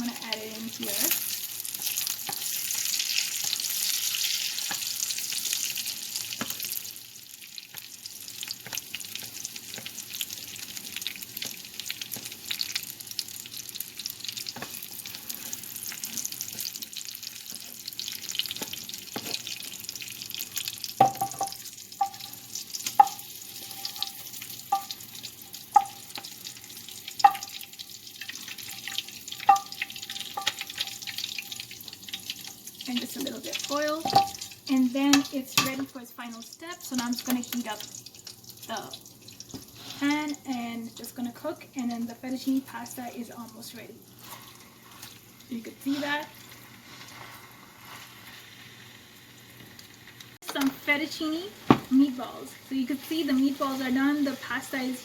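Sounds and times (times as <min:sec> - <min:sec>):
meatballs sizzling in oil: 0:00.0 - 0:55.0
metal utensil clinking on pan: 0:21.0 - 0:22.3, 0:23.0 - 0:25.0, 0:25.7 - 0:26.3, 0:27.2 - 0:27.6, 0:28.7 - 0:31.6, 0:35.1 - 0:35.9.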